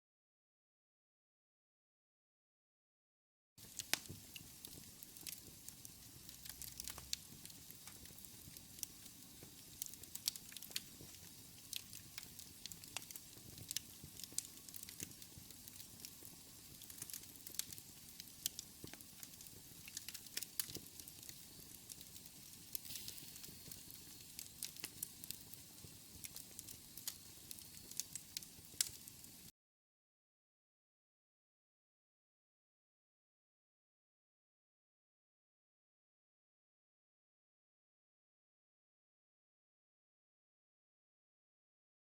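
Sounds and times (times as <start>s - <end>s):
wood fire crackling: 3.6s - 29.5s.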